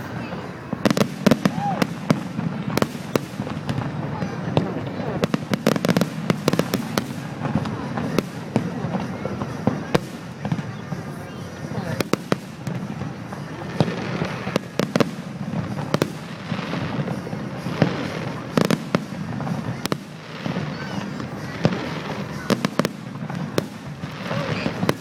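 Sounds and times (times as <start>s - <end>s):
continuous noisy background: 0.0s - 25.0s
fireworks bangs: 0.0s - 25.0s.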